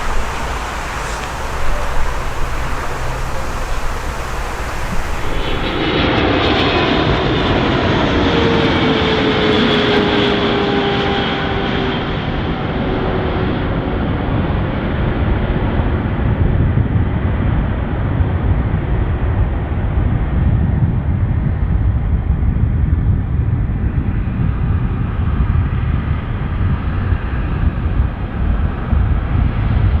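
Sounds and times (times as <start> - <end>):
airplane passing close: 0.0 - 14.0.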